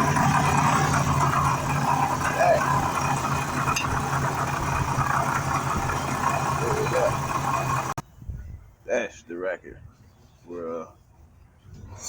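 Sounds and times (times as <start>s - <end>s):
car engine running: 0.0s - 8.0s
loud engine racket: 0.0s - 8.0s.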